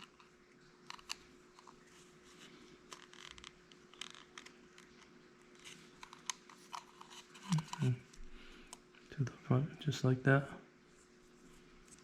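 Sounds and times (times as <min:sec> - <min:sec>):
plastic parts clicking and scraping: 0:00.0 - 0:08.8
faint hum: 0:00.0 - 0:12.0.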